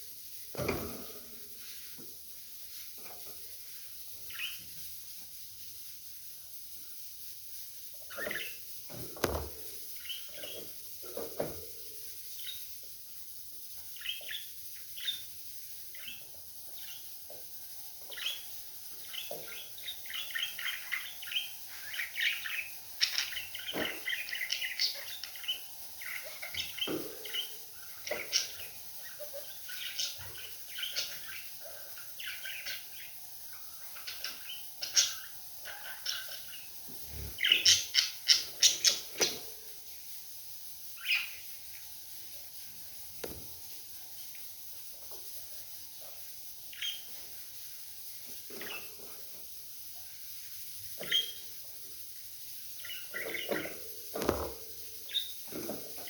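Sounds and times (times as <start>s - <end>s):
budgerigars chirping and warbling: 4.3s - 4.6s, 8.1s - 8.6s, 9.2s - 11.5s, 13.9s - 15.3s, 15.9s - 17.1s, 18.0s - 39.4s, 41.0s - 41.5s, 46.7s - 47.1s, 48.5s - 49.2s, 51.0s - 51.5s, 52.8s - 56.0s.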